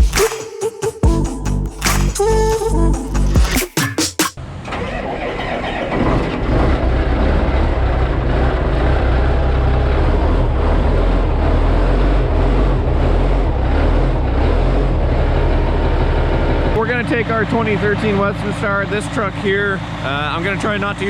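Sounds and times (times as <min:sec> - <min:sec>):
diesel truck engine rumbling: 0:04.4 - 0:21.0.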